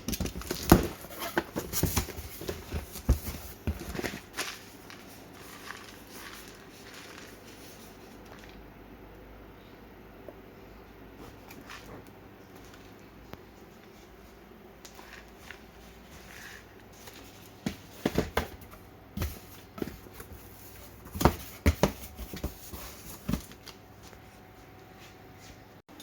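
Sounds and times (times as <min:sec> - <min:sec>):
packaging crinkling: 0:03.8 - 0:08.6.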